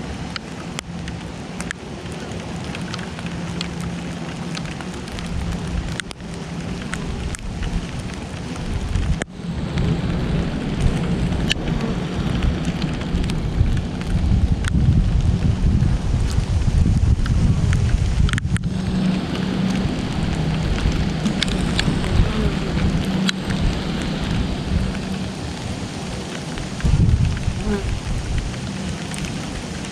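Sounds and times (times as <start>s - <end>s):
rain drops tapping: 0.0s - 29.9s
honeybees buzzing: 1.8s - 8.7s, 18.7s - 29.9s
low rumble: 2.4s - 29.9s.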